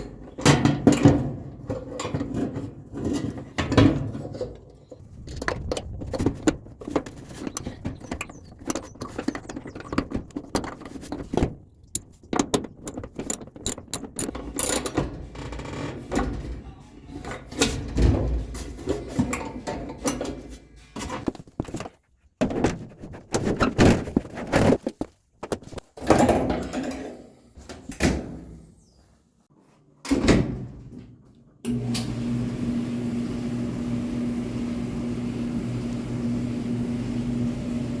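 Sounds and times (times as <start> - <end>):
clothes dryer humming: 4.8 - 14.9, 31.7 - 38.0.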